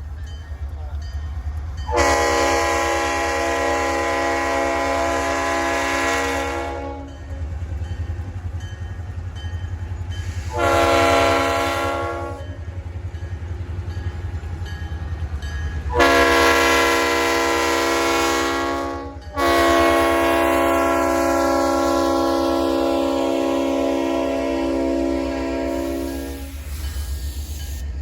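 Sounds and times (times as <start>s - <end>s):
locomotive air horn blasts: 1.9s - 7.1s, 10.4s - 12.4s, 15.9s - 26.7s.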